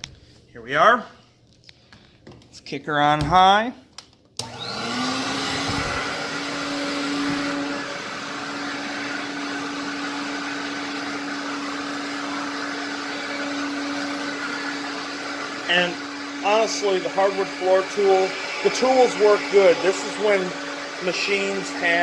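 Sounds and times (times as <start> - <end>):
vacuum cleaner motor running: 4.4 - 22.0.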